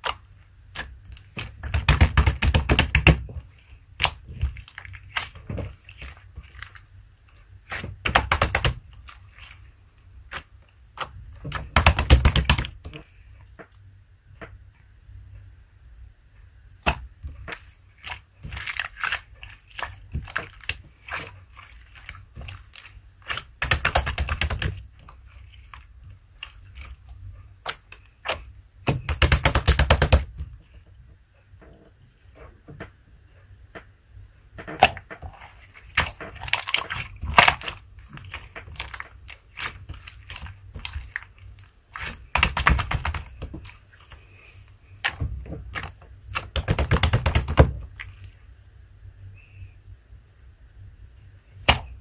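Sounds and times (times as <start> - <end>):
slime squished by hand: 7.6 - 9.7, 16.8 - 30.5, 34.6 - 48.4, 51.6 - 52.0.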